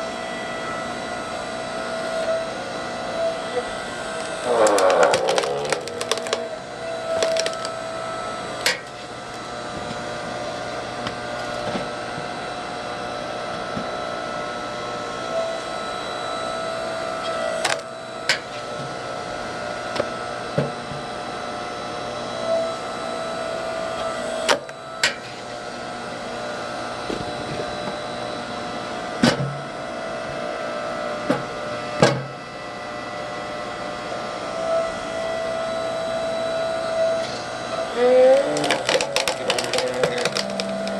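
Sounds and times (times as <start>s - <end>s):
log splitter motor humming: 0.0s - 29.1s, 33.2s - 40.9s
wood splitting cracks: 4.2s - 7.9s, 17.6s - 17.9s, 38.3s - 40.9s.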